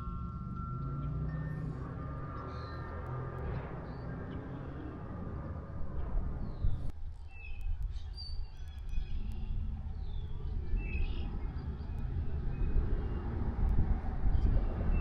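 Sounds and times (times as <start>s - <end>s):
wind rumble on microphone: 5.1s - 15.0s
small birds chirping: 6.4s - 13.4s.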